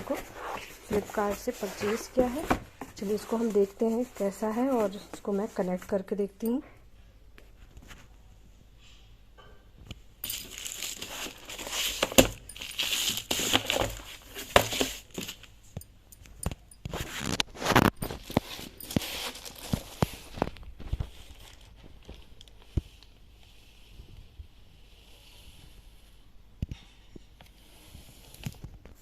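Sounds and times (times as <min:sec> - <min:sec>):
packaging crinkling and rustling: 0:10.2 - 0:15.5, 0:16.9 - 0:23.1.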